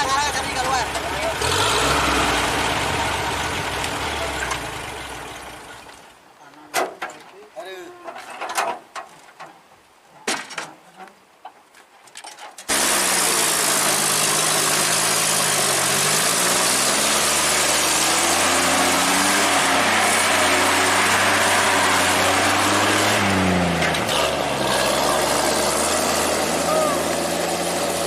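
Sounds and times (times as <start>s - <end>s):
truck engine running: 0.0s - 5.9s, 12.7s - 28.0s.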